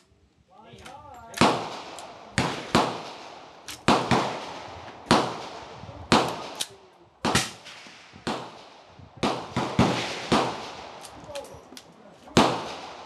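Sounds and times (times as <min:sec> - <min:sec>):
gunshots with echo: 0:01.4 - 0:06.6, 0:07.2 - 0:11.0, 0:12.4 - 0:13.0.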